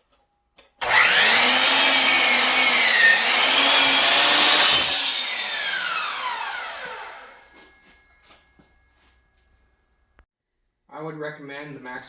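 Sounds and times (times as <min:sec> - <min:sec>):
mitre saw cutting wood: 0:00.8 - 0:07.5
saw blade winding down: 0:00.8 - 0:07.5.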